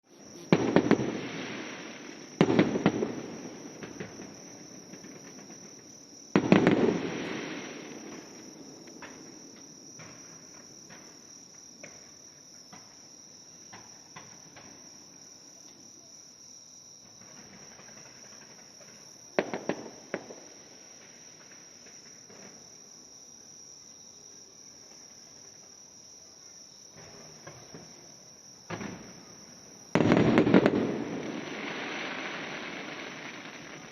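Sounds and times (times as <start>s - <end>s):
firework crackles: 0.1s - 12.1s, 17.2s - 22.7s, 28.7s - 33.9s
fireworks booming: 0.2s - 14.9s, 17.2s - 22.7s, 26.9s - 33.9s.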